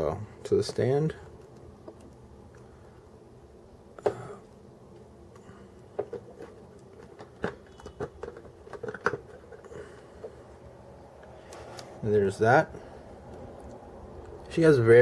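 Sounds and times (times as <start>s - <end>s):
plastic parts clicking and tapping: 5.8s - 10.4s.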